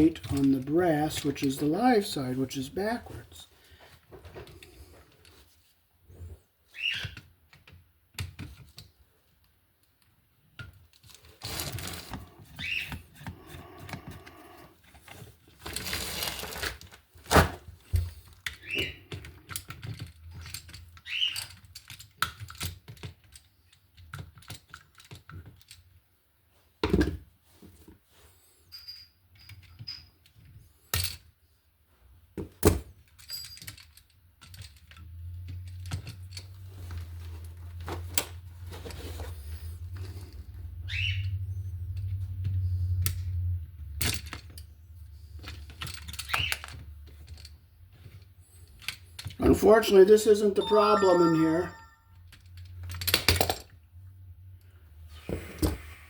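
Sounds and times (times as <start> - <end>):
hand tools clicking and scraping: 0.0 - 3.3.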